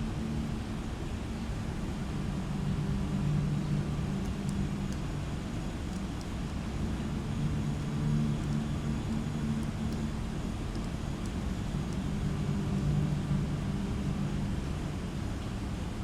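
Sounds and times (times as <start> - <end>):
background hiss: 0.0 - 16.0
low mechanical hum: 0.0 - 16.0
faint ticks: 2.5 - 14.6.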